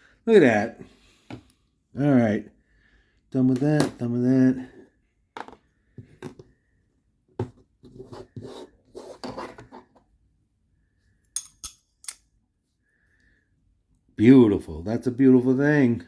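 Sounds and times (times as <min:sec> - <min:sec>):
metal knife parts clinking: 0:11.3 - 0:12.3.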